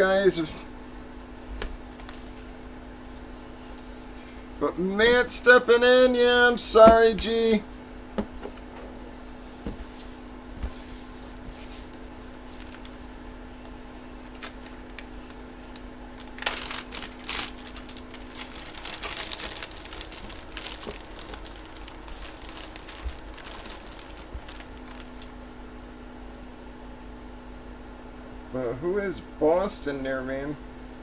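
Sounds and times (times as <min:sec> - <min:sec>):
low steady hum: 0:00.0 - 0:31.0
plastic packaging crinkling: 0:11.8 - 0:25.6.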